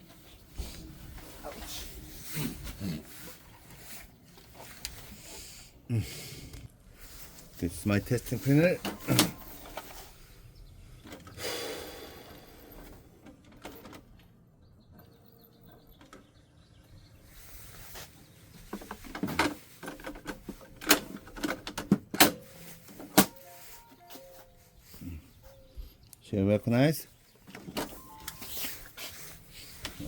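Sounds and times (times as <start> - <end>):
plastic clicks and knocks of printer: 18.8 - 22.4.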